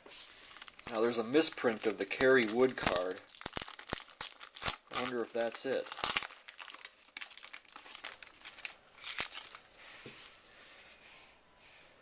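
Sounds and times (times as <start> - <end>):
cards and packaging crinkling: 0.3 - 9.7.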